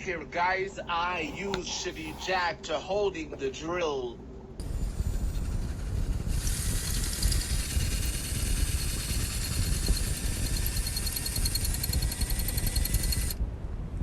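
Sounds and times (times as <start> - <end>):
electric drill running: 4.6 - 13.4.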